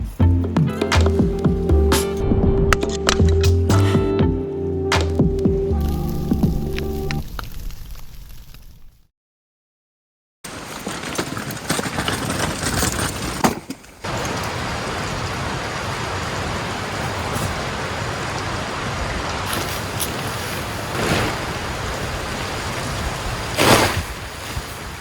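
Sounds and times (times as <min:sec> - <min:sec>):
river water rushing: 0:14.0 - 0:25.0.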